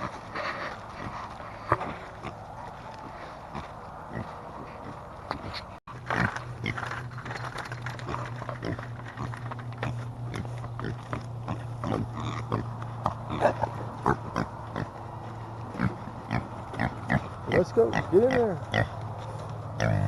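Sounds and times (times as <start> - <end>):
pigs grunting and oinking: 0.0 - 2.5, 3.5 - 4.9, 8.0 - 15.0, 15.7 - 19.0, 19.7 - 20.0
steady low hum: 0.0 - 20.0.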